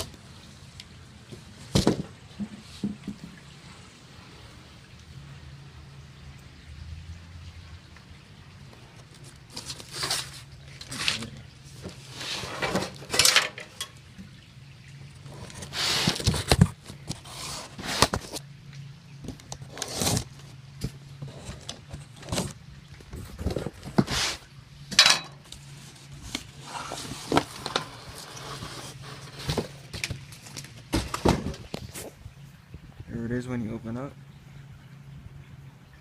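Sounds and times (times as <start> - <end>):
packaging scrapes and rustles: 9.1 - 11.3, 15.3 - 18.4, 19.6 - 20.4, 25.6 - 32.2.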